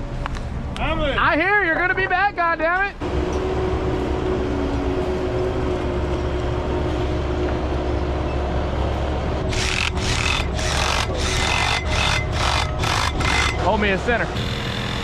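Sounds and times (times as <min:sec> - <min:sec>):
machinery engine rumble: 0:00.0 - 0:14.5
hand saw cutting pipe: 0:09.5 - 0:13.9.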